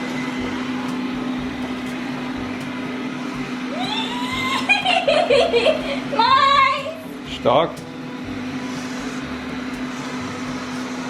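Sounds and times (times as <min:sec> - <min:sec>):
robot vacuum motor hum: 0:00.0 - 0:11.0
high voice singing: 0:03.7 - 0:04.9.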